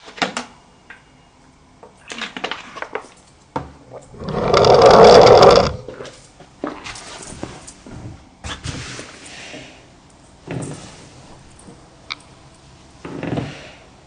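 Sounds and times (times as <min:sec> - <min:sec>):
loud rasping snore: 0:04.0 - 0:06.0.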